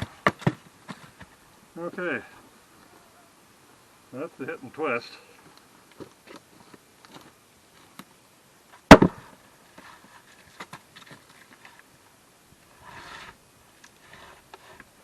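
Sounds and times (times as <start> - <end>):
axe chopping wood: 8.9 - 9.3.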